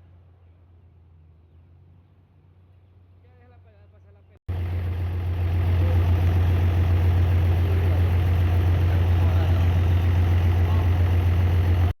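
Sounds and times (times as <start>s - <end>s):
heavy engine humming: 4.5s - 12.0s.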